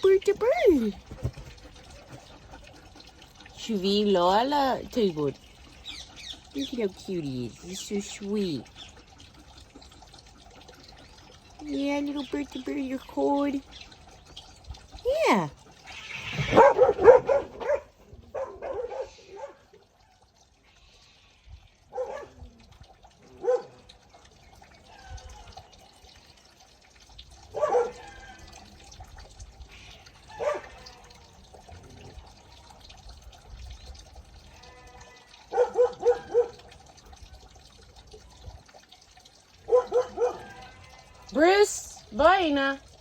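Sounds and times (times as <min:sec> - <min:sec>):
dog barking: 0:16.5 - 0:19.7, 0:21.9 - 0:22.4, 0:23.4 - 0:23.8, 0:27.5 - 0:28.2, 0:30.3 - 0:30.8, 0:35.5 - 0:36.7, 0:39.6 - 0:40.6.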